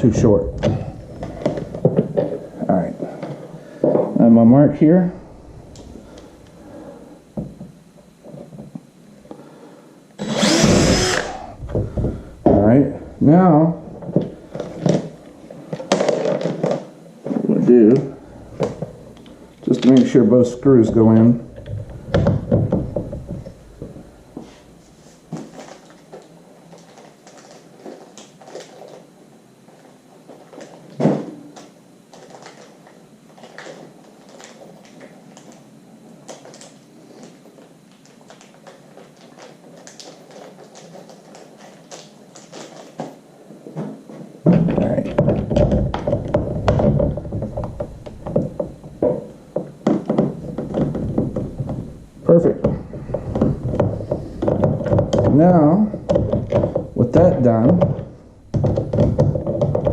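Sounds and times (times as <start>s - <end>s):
knocking and rattling: 20.8s - 24.1s, 44.4s - 59.9s.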